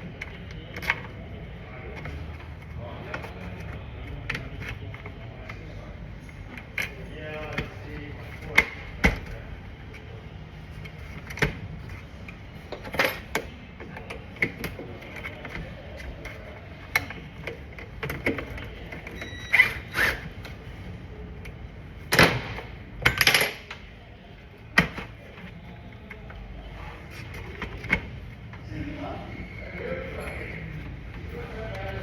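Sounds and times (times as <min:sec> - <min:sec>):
clicks and clacks of handling parts: 0:00.0 - 0:20.6, 0:21.4 - 0:23.9.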